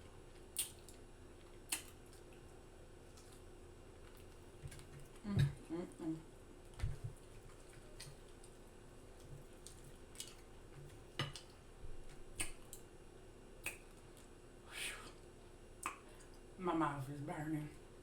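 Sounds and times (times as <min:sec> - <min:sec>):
mouth smacking while eating: 0:00.5 - 0:02.5, 0:13.6 - 0:14.3.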